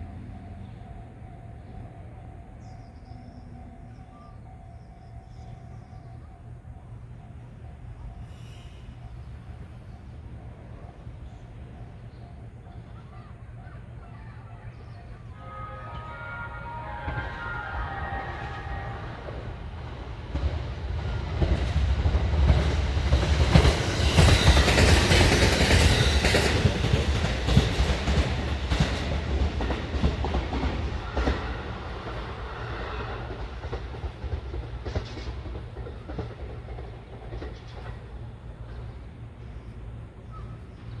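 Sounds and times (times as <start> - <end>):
electric train passing: 0.0 - 41.0
wheels clacking over rail joints: 19.2 - 39.1.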